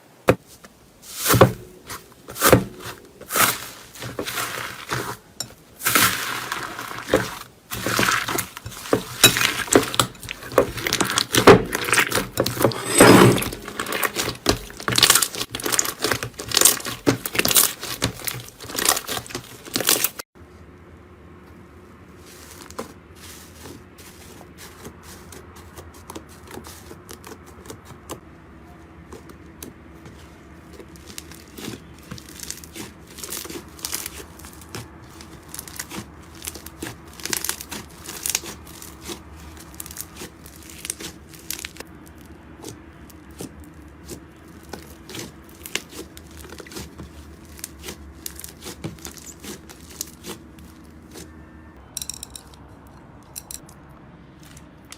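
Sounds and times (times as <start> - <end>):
slime squished by hand: 13.6 - 20.2, 30.1 - 51.4.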